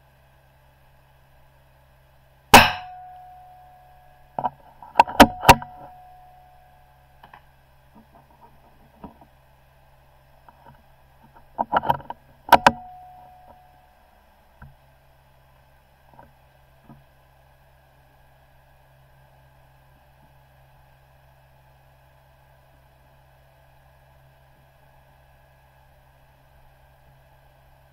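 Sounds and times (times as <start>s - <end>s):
rifle shots: 2.6s - 3.1s
short ringing tone: 2.6s - 4.2s, 5.3s - 7.1s, 12.6s - 14.0s.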